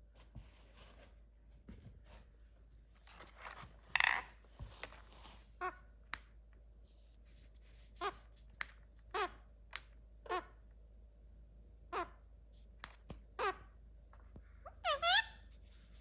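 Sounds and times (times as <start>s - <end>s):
parakeet calling: 14.7s - 15.5s.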